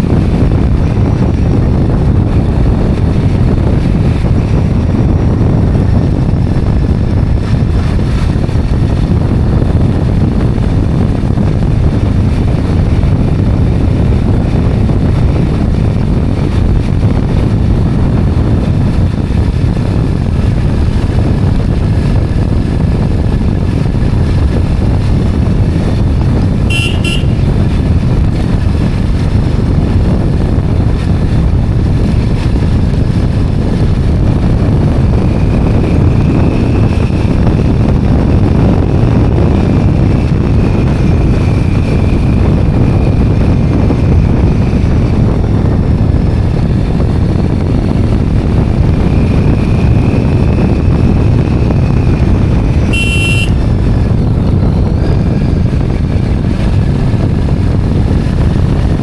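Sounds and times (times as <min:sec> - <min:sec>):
wind rumble on microphone: 0:00.0 - 0:59.0
motorcycle horn beep: 0:26.7 - 0:27.5, 0:52.9 - 0:53.6.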